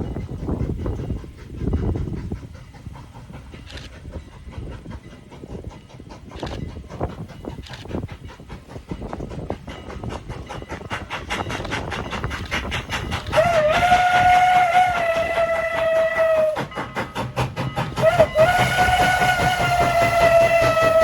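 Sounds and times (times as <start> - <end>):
steam locomotive exhaust chuffs: 0.0 - 21.0
steam whistle blasts: 13.3 - 16.8, 17.9 - 21.0.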